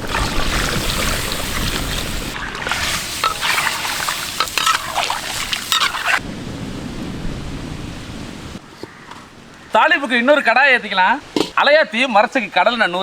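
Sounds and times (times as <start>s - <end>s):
liquid pouring: 0.0s - 6.2s
utensils scraping and clattering: 0.0s - 6.2s.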